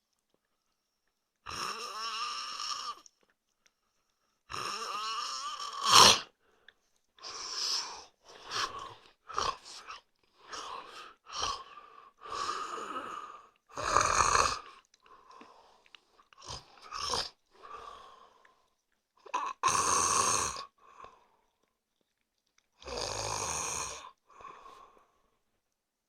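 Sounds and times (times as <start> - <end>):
man snoring: 1.5 - 3.0, 4.5 - 6.3, 12.3 - 14.7, 19.3 - 20.7, 22.8 - 24.2
faint breathing: 24.3 - 25.5.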